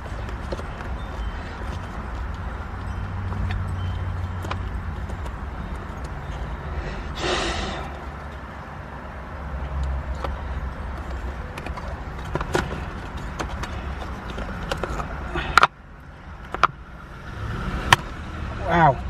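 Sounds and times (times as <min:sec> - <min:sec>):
tools clicking and knocking: 0:09.6 - 0:15.8.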